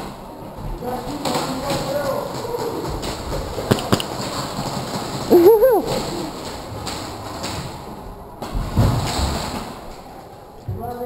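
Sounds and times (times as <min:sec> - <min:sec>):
sharp snaps: 0:03.6 - 0:04.5
person crying out: 0:05.3 - 0:06.0.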